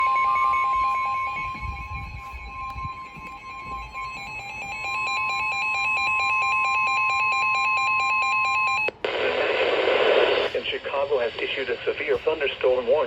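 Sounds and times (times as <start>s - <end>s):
steady warning tone: 0.0s - 8.9s
synthesized voice speaking: 10.4s - 13.0s.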